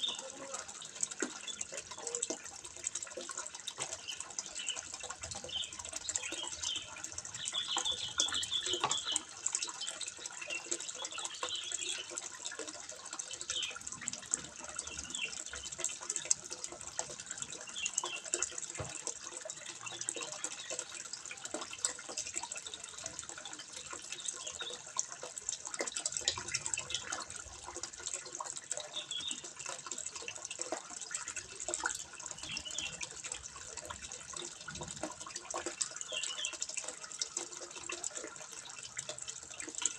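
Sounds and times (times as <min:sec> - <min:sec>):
water trickling into pond: 0:00.0 - 0:39.9.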